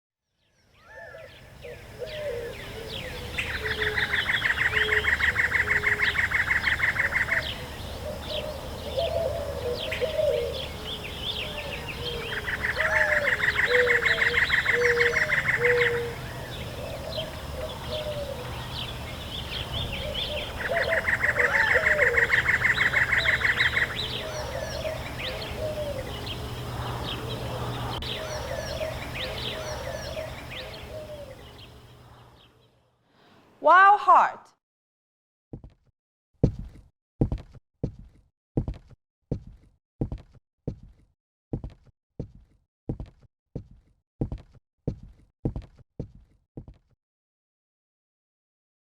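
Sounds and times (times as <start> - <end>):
birds chirping and calling: 0.8 - 32.8.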